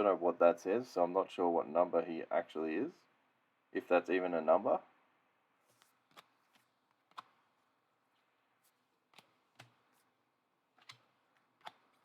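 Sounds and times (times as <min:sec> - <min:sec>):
trading cards clicking: 0:09.1 - 0:09.9, 0:10.8 - 0:12.0.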